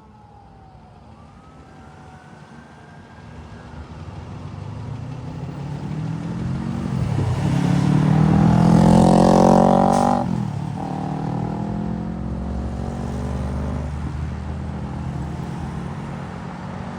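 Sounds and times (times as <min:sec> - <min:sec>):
tyre and road noise: 0:03.4 - 0:16.9
vehicle engine accelerating: 0:04.4 - 0:16.9.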